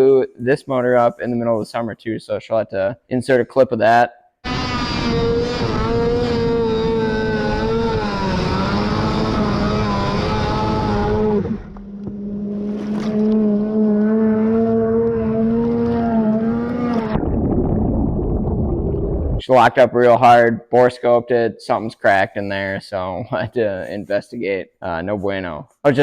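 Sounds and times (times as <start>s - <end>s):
snowmobile engine revving high: 4.5s - 17.2s.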